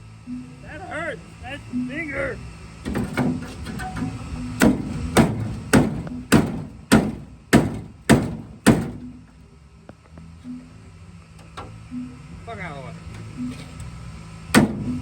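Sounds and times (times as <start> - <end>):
hammer blows on sheet metal: 4.6 - 9.2.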